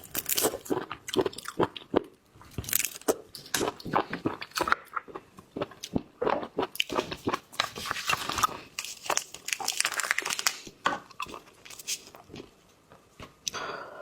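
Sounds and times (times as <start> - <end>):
crunchy bites and chewing: 0.0 - 12.4
seafood crackling and tearing: 7.7 - 12.1.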